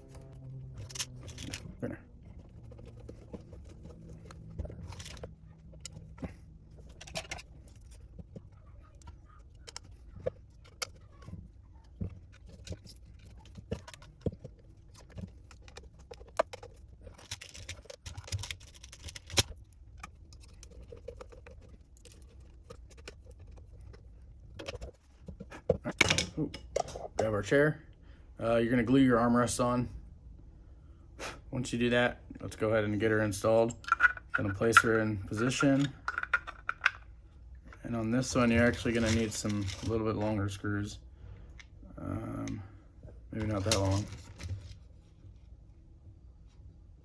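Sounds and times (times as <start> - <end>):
small screws and parts clinking: 0.7 - 8.3.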